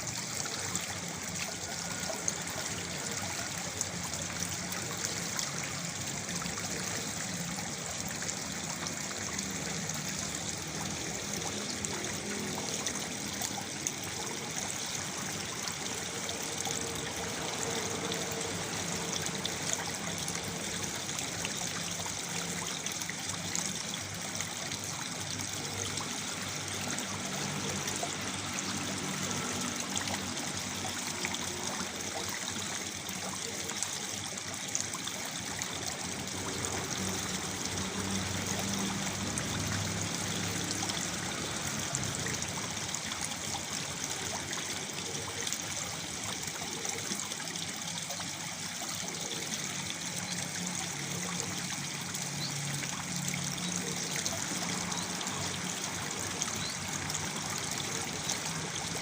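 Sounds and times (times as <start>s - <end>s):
waterfall splashing into pool: 0.0s - 59.0s.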